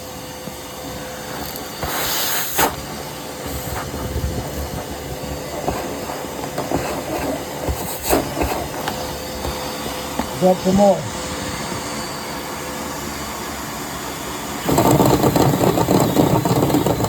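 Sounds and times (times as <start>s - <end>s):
cleaning rods knocking in duct: 14.7s - 17.0s.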